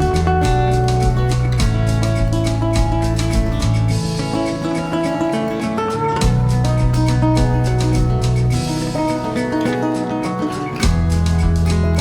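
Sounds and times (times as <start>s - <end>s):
low bass hit: 0.0s - 4.2s, 6.2s - 9.0s, 10.8s - 12.0s
acoustic guitar music: 0.0s - 12.0s.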